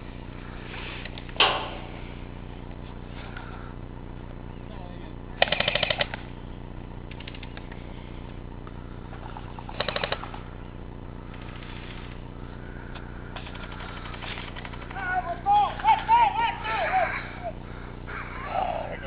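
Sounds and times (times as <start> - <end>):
airsoft gun bursts: 5.4 - 6.3, 9.2 - 10.5, 13.4 - 16.6.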